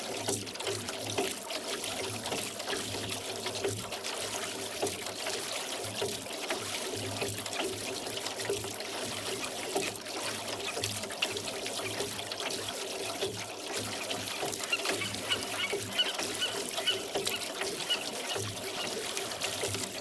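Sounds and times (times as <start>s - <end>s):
oars splashing in water: 9.0s - 20.0s.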